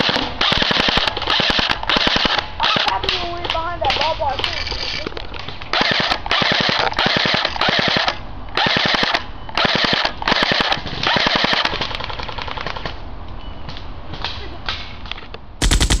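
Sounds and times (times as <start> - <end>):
airsoft gun firing bursts: 0.0 - 4.1, 5.7 - 12.9, 15.6 - 16.0.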